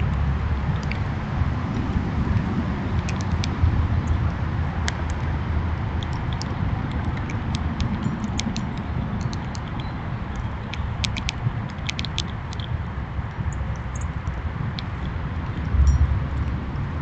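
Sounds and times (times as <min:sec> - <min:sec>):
low rumble: 0:12.8 - 0:17.0.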